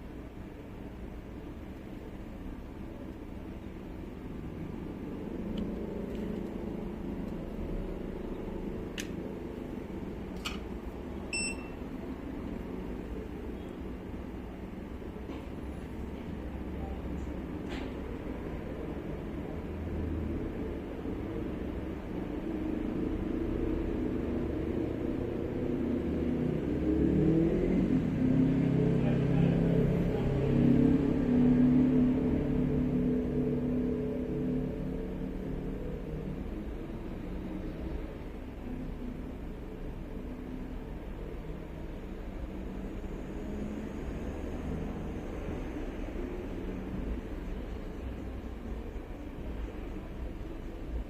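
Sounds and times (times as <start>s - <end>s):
low mechanical hum: 0.0s - 51.0s
short high electronic beep: 11.3s - 11.8s.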